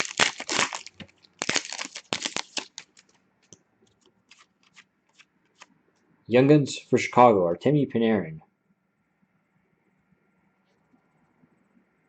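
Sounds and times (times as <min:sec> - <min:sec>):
trading cards flicked by hand: 0:00.6 - 0:05.7.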